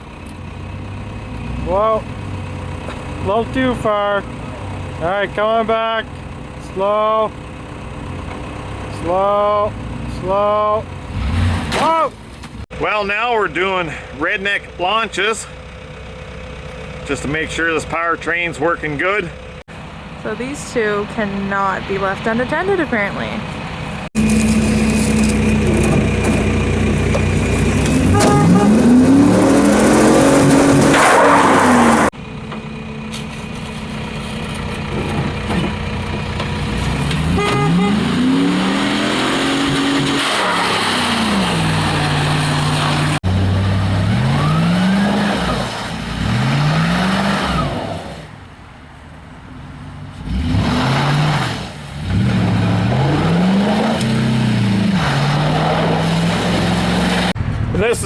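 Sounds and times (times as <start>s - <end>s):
pickup truck engine revving: 8.0s - 12.2s, 23.7s - 32.2s, 34.9s - 48.3s, 50.2s - 57.4s.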